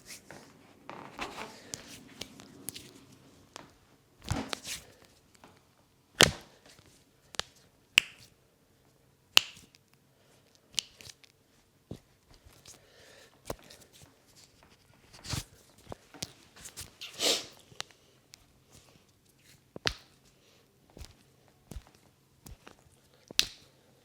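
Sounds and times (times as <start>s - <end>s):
soft rubbing and rustling: 0.0s - 5.6s, 13.4s - 23.4s
massage smacks: 1.2s - 4.9s, 6.2s - 6.5s, 19.8s - 20.2s, 20.9s - 23.7s.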